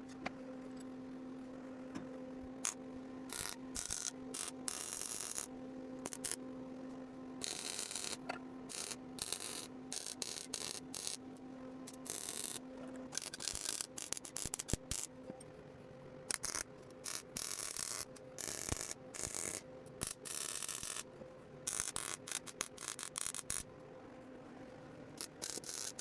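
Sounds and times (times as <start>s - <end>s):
faint hum: 0.0s - 26.0s
welding arc crackling: 2.6s - 6.4s, 7.4s - 11.2s, 11.9s - 15.1s, 16.3s - 21.0s, 21.7s - 23.6s, 25.2s - 26.0s.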